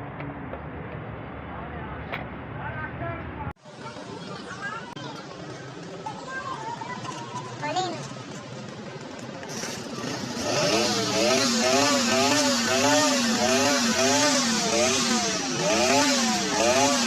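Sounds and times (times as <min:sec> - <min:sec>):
motorcycle engine revving: 0:08.1 - 0:17.0.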